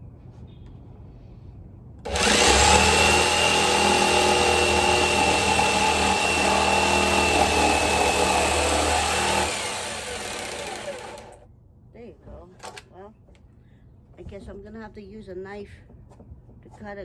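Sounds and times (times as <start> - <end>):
jigsaw cutting plastic barrel: 2.1 - 11.4.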